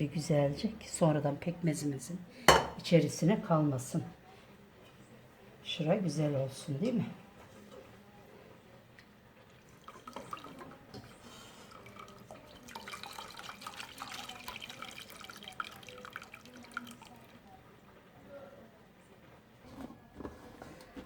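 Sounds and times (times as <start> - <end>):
liquid trickling and dripping: 11.7 - 17.4.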